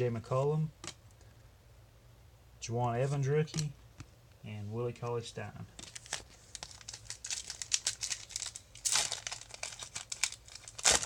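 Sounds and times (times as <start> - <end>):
plastic wrapper crinkling: 5.8 - 11.0
plastic wrapper ripping: 5.8 - 11.0.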